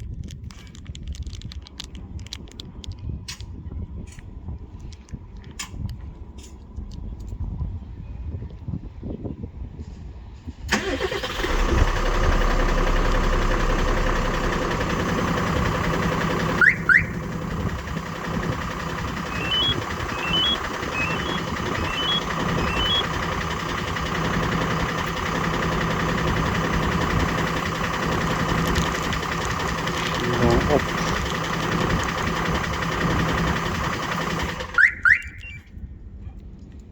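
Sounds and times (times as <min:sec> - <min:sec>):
diesel engine starting and idling: 0:10.6 - 0:35.7
loud rising chirps: 0:19.2 - 0:23.2, 0:34.7 - 0:35.7
faint rising beeps: 0:19.3 - 0:23.0.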